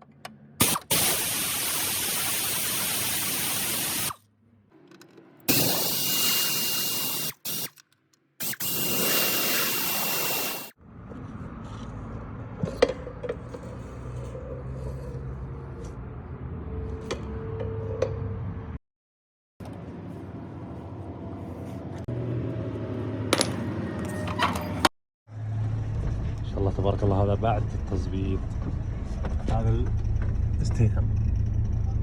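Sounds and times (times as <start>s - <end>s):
loud hissing spray: 0.6s - 4.2s, 5.5s - 7.5s, 8.5s - 10.8s
low engine hum: 25.3s - 32.0s.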